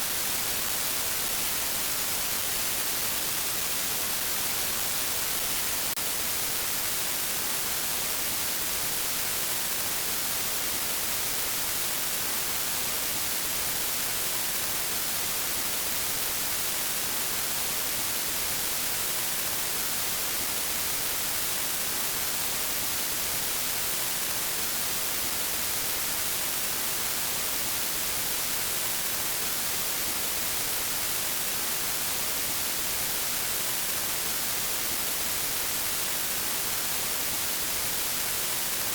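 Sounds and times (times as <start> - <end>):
static hiss: 0.0 - 38.9.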